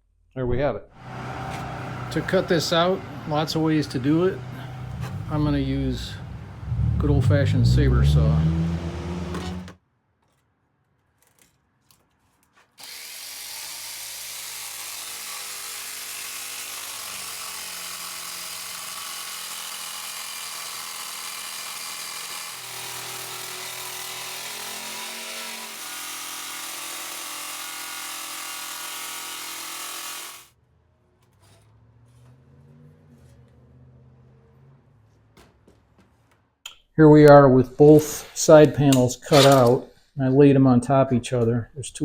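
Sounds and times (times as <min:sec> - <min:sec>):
jigsaw cutting sheet steel: 0:01.0 - 0:06.3, 0:07.0 - 0:09.8, 0:12.8 - 0:30.6.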